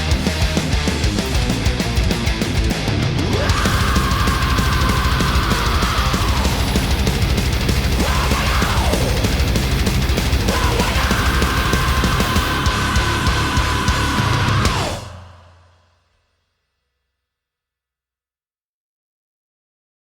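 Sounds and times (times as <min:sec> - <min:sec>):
heavy rock music: 0:00.0 - 0:15.8.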